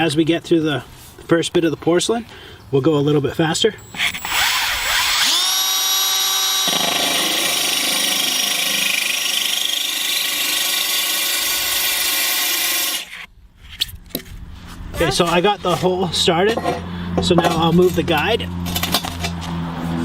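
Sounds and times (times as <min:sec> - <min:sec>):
core bit cutting tile: 0:03.9 - 0:13.3
drill motor whine: 0:03.9 - 0:13.3.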